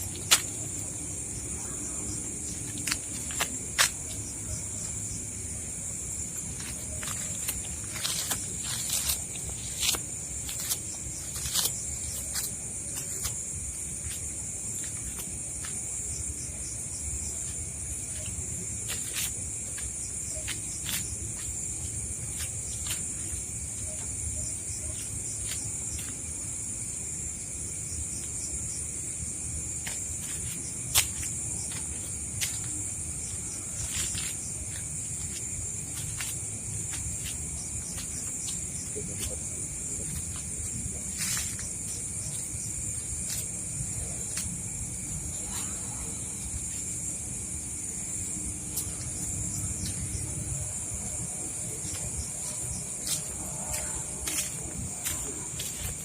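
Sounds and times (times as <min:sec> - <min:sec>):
crickets chirring: 0:00.0 - 0:56.0.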